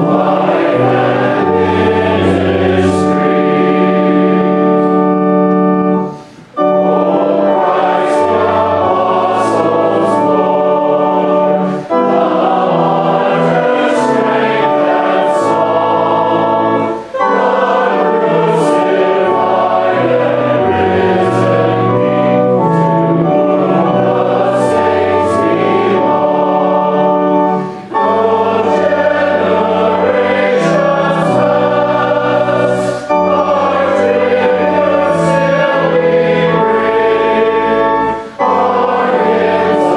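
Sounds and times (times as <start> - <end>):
congregation singing a hymn: 0.0 - 39.9
pipe organ: 0.0 - 39.9.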